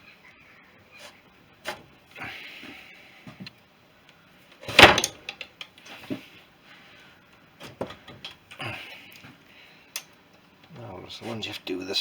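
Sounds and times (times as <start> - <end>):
metal spanner clanks and clicks: 4.7 - 5.6.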